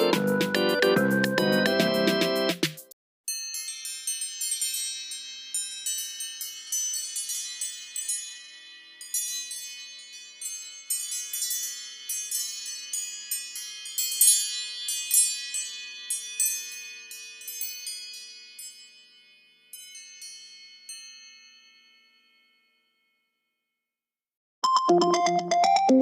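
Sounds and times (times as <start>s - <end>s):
keyboard melody ringtone: 0.0s - 2.6s, 24.6s - 26.0s
tinkling chime ringtone: 3.3s - 23.6s, 24.6s - 26.0s.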